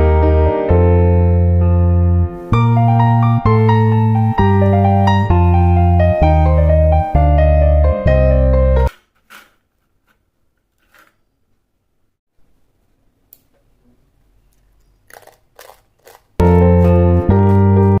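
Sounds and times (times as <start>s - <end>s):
piano music: 0.0s - 8.9s, 16.4s - 18.0s
crunching of fried snack: 15.0s - 17.7s.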